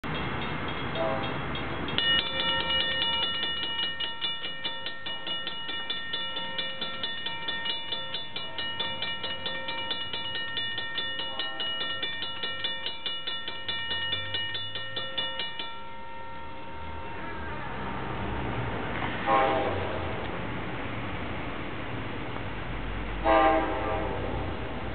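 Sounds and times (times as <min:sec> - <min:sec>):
locomotive bell ringing: 0:00.0 - 0:18.2.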